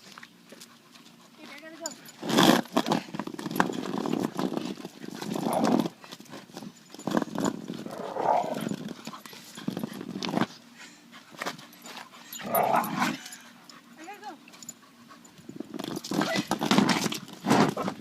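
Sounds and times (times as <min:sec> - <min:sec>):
puppy growling: 0:05.1 - 0:06.0, 0:07.7 - 0:08.9, 0:12.4 - 0:13.4.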